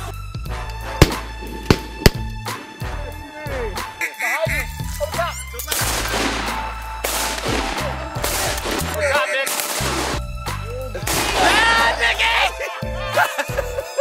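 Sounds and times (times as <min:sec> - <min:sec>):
background music with bass line: 0:00.0 - 0:09.2, 0:09.8 - 0:14.0
shotguns firing: 0:00.9 - 0:03.1, 0:05.7 - 0:10.2, 0:11.1 - 0:11.6.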